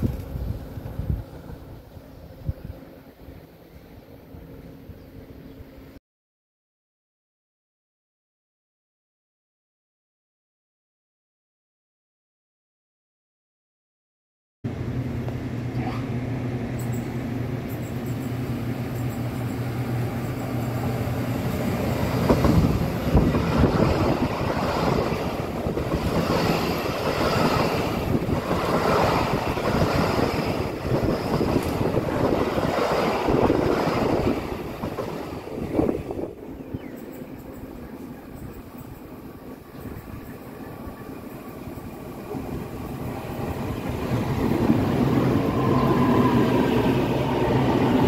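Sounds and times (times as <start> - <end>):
train motor hum: 14.7 - 48.0
train wheels over rail joints: 16.7 - 48.0.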